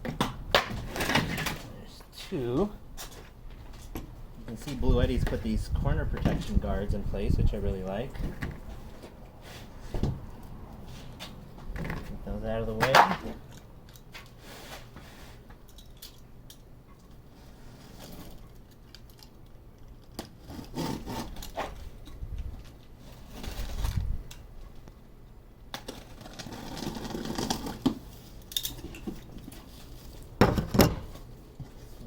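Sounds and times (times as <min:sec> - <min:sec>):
cardboard rubbing and scraping: 0:20.4 - 0:21.8, 0:23.0 - 0:24.1, 0:25.9 - 0:28.2.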